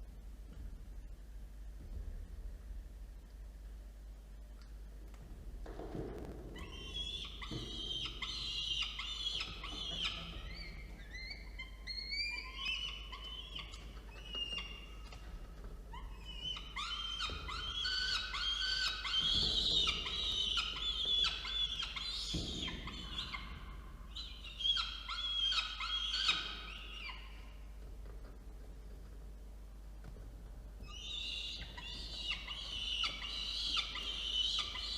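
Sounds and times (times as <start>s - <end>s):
steady low hum: 0.0s - 34.9s
falcon chicks begging calls: 30.8s - 34.9s.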